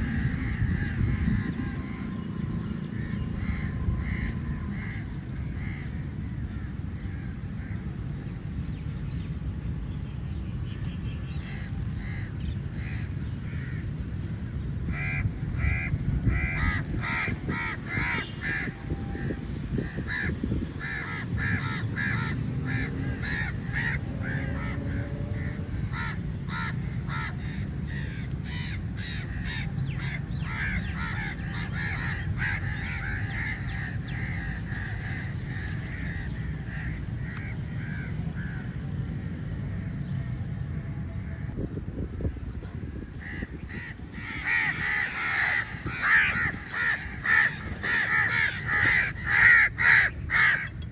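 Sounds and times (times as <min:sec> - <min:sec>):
crows cawing: 0:00.0 - 0:02.0, 0:14.9 - 0:38.7, 0:43.2 - 0:50.9.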